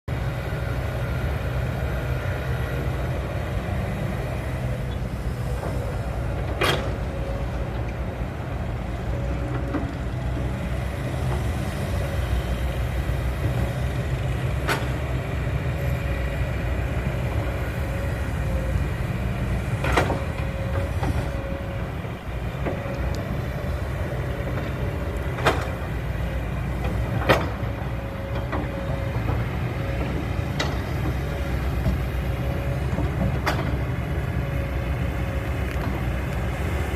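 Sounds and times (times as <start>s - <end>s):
excavator diesel engine running: 0.1s - 36.9s.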